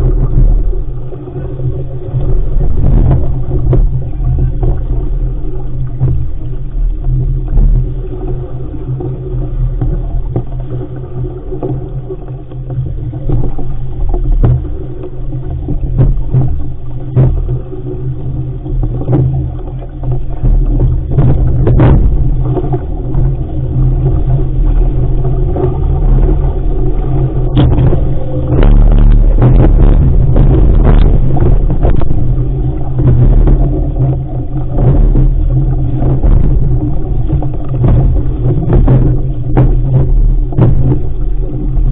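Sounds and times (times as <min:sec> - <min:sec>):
rushing water: 0:00.0 - 0:41.9
water splashes: 0:00.0 - 0:41.9
wind rumbling on microphone: 0:00.0 - 0:41.9.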